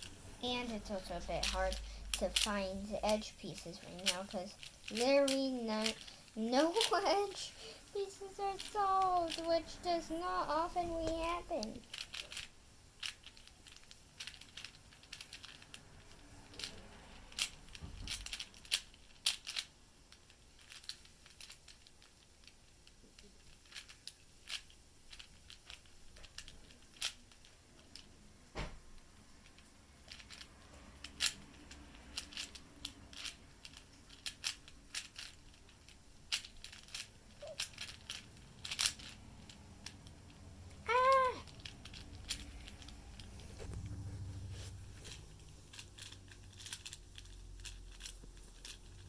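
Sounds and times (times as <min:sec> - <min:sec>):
puzzle cube clicking: 0:01.2 - 0:15.6, 0:30.1 - 0:43.9.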